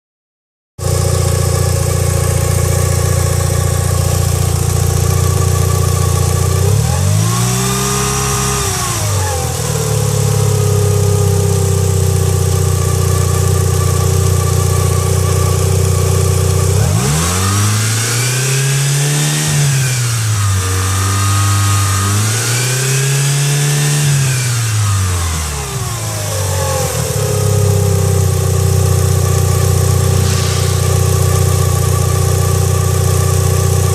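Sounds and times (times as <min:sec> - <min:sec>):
car engine idling and revving: 0:00.8 - 0:33.9.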